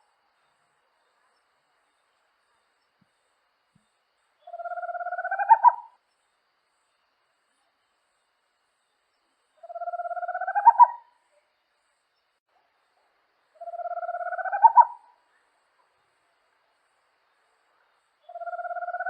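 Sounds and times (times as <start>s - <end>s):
owl trilling call: 4.5s - 6.0s, 9.6s - 11.1s, 13.6s - 15.2s, 18.3s - 19.0s.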